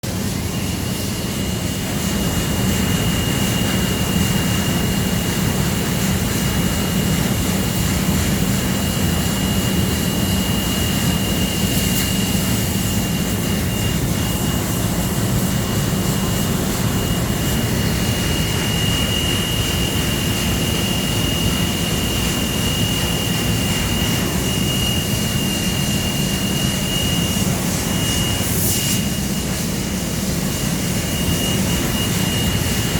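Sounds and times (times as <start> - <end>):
high whistle: 21.0 - 29.6, 31.0 - 32.9.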